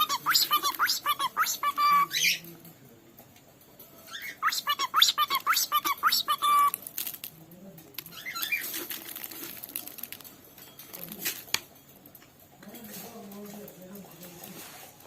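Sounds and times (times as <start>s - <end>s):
bird chirp: 0.0s - 2.5s, 4.0s - 6.8s.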